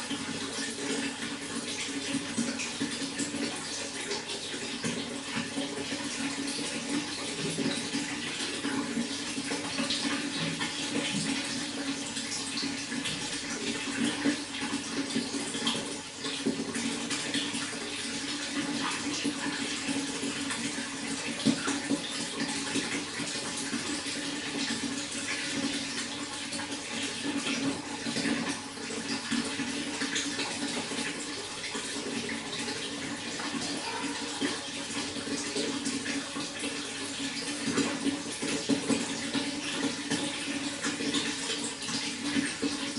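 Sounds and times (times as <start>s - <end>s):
running water splashing: 0.0s - 42.9s.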